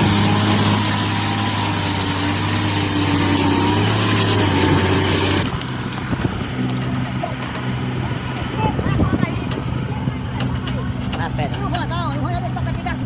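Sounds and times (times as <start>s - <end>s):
engine running: 0.0s - 13.0s.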